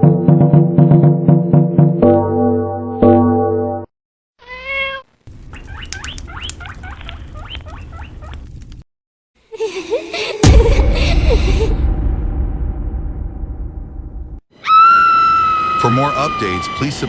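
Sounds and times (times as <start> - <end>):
cat meowing: 4.4 - 5.1.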